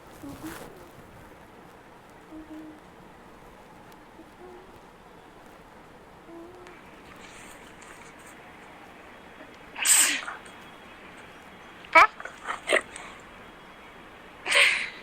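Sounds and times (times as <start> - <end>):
dog huffing through its nose: 9.8 - 10.6.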